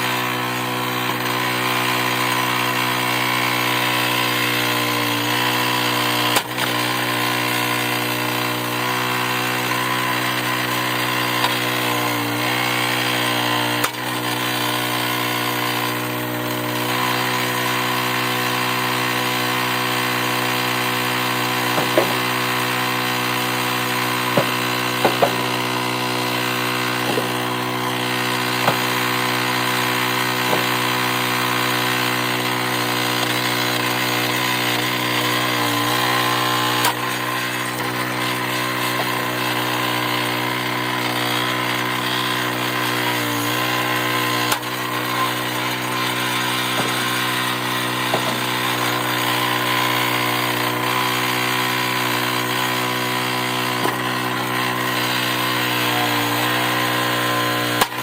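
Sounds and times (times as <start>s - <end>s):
log splitter engine running: 0.0s - 58.0s
sharp knocks: 24.4s - 25.4s.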